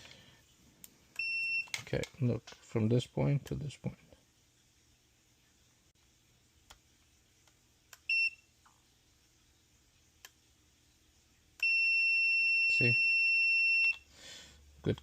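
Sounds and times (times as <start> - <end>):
multimeter continuity beeps: 1.2 - 1.8, 8.0 - 8.5, 11.6 - 14.1.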